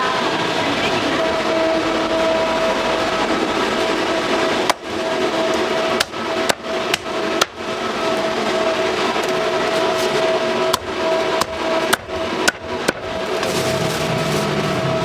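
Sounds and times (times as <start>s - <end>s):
cleaver chopping on a block: 6.0s - 7.6s, 10.7s - 13.1s.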